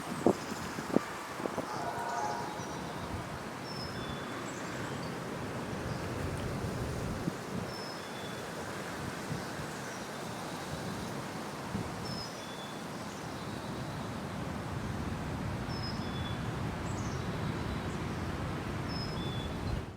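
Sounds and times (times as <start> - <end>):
bird two-note call: 1.7 - 3.1.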